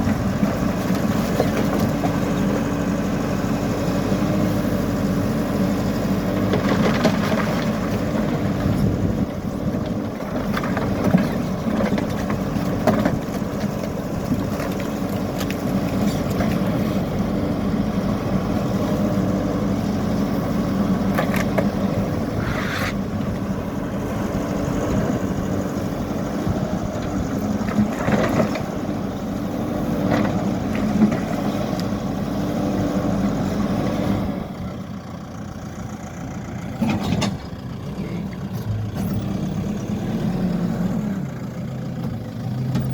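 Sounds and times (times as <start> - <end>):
knocks and scrapes of rubble: 0.0 - 2.2, 6.3 - 9.0, 9.7 - 17.0, 21.1 - 23.5, 27.2 - 28.9
diesel engine running: 0.0 - 42.9.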